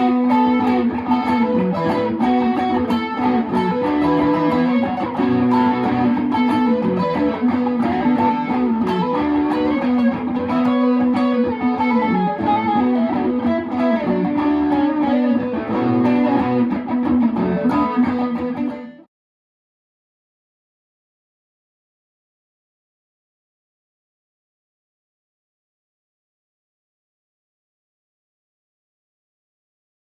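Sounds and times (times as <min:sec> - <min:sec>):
electric guitar playing: 0:00.0 - 0:19.1.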